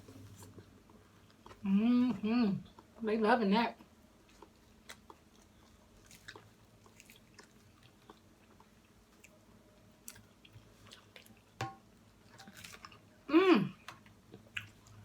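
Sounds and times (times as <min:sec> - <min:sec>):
person chewing: 0:04.2 - 0:09.4, 0:10.0 - 0:11.6, 0:13.7 - 0:15.0.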